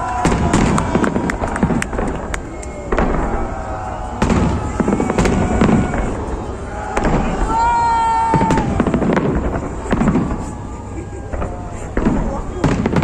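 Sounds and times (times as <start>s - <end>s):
fireworks bangs: 0.0s - 13.0s
fireworks crackling: 0.0s - 13.0s.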